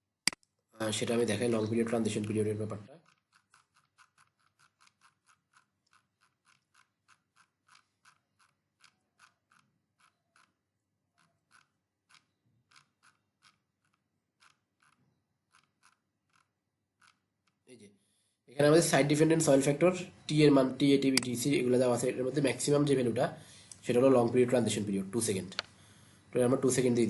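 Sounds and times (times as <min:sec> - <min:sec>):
faint computer mouse clicks: 0:03.0 - 0:17.6.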